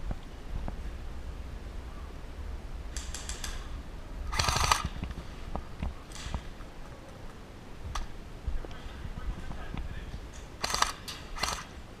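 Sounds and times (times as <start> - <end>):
airsoft gun shots: 4.3 - 5.0, 10.6 - 11.7.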